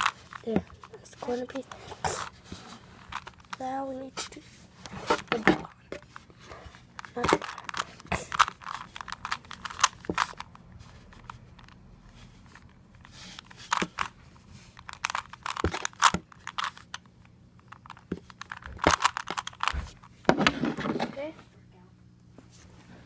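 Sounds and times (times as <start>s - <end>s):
puzzle cube clicking: 7.0s - 11.8s, 12.5s - 14.1s, 14.8s - 19.7s.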